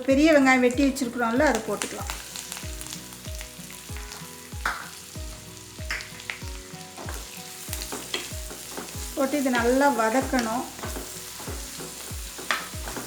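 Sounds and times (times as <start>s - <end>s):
onion sizzling in hot oil: 0.0s - 13.0s
soft background music beat: 0.0s - 13.0s
spoon scraping a pan: 6.9s - 13.0s.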